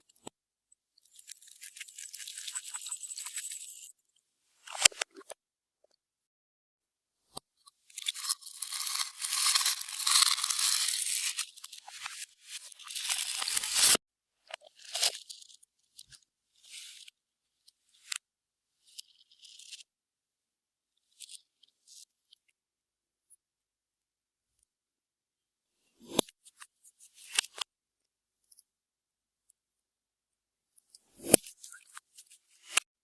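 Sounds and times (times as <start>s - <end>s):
slime with beads crackling: 8.0s - 14.0s.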